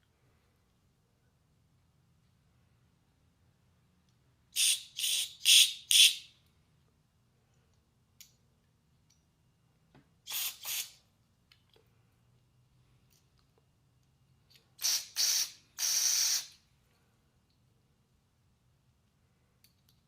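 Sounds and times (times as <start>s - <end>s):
hissing spray blasts: 10.3s - 11.0s, 14.8s - 16.5s.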